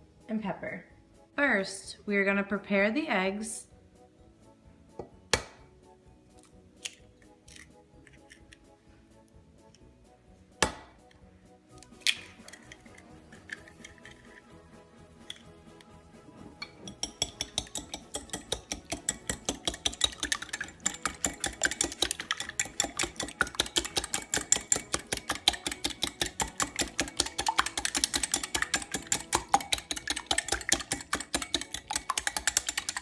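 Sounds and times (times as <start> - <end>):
eggs beaten in a bowl: 11.9 - 15.9, 16.5 - 33.0.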